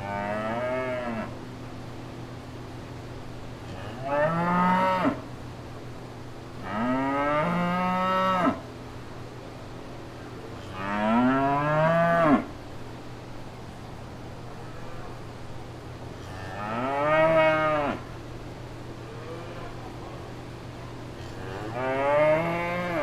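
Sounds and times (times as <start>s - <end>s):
steady low hum: 0.0s - 23.0s
cattle mooing: 16.2s - 18.1s, 21.2s - 23.0s.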